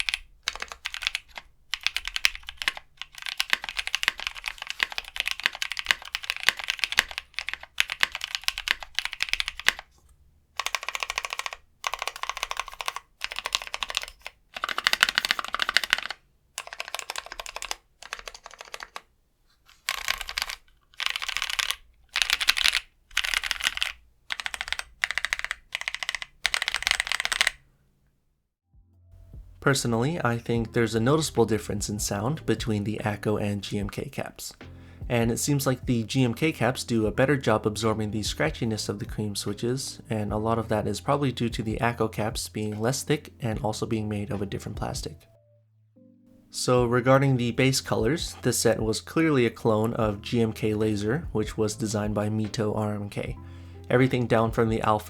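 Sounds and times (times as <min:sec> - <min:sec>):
typing on mechanical keyboard: 0:00.0 - 0:09.9, 0:10.6 - 0:19.1, 0:19.8 - 0:27.6.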